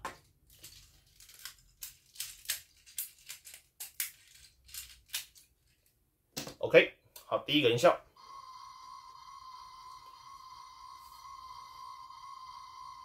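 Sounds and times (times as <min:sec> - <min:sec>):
plastic toy parts clicking: 0:00.2 - 0:05.9.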